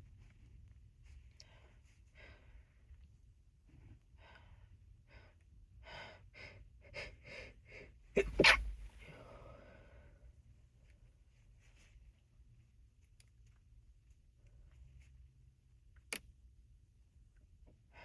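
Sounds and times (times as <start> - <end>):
person sneezing: 8.2 - 9.0.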